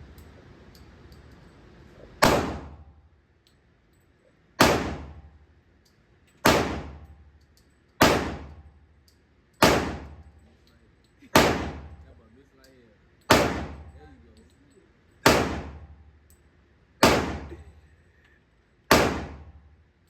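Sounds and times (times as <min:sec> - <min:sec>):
handgun shots: 0:02.2 - 0:02.8, 0:04.6 - 0:05.2, 0:06.4 - 0:07.1, 0:08.0 - 0:08.6, 0:09.6 - 0:10.2, 0:11.3 - 0:12.0, 0:13.3 - 0:13.9, 0:15.2 - 0:15.9, 0:17.0 - 0:17.6, 0:18.9 - 0:19.6.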